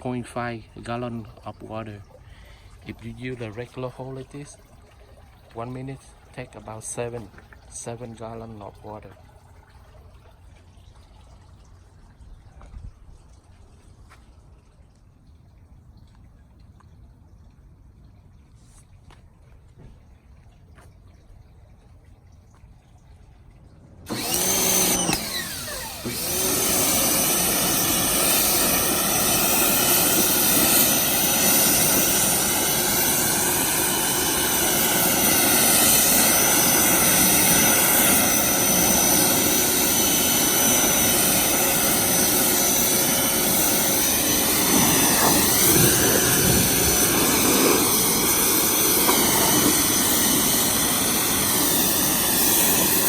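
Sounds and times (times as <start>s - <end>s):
pressure washer motor running: 24.0s - 53.0s
water jet spraying: 24.1s - 53.0s.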